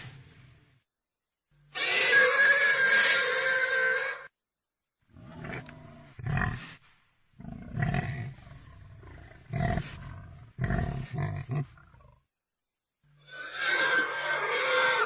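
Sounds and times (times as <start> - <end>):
animal giving deep calls: 13.2 - 15.0.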